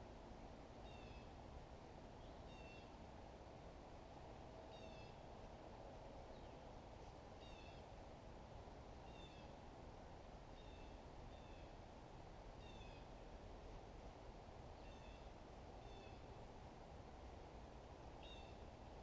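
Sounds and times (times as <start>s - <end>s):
quiet steady hiss: 0.0s - 19.0s.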